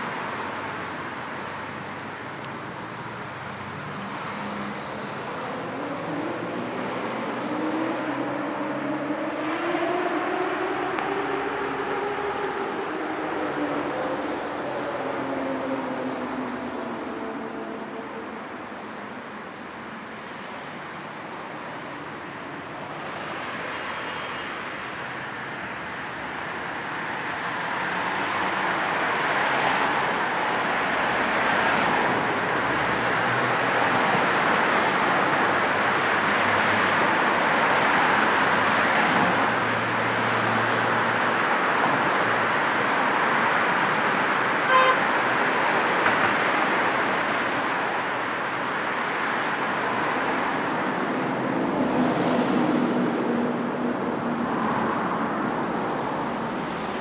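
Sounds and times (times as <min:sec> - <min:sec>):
road traffic passing: 0:00.0 - 0:57.0
car horn toot: 0:44.7 - 0:45.1.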